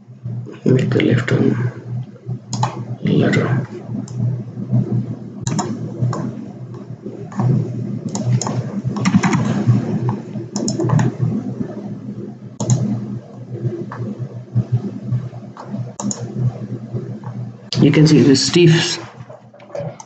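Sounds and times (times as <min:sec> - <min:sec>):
steady low hum: 0:00.0 - 0:20.0
mouse and keyboard clicking: 0:02.5 - 0:02.8, 0:05.5 - 0:07.5, 0:08.1 - 0:11.1, 0:12.6 - 0:12.9, 0:16.0 - 0:16.3.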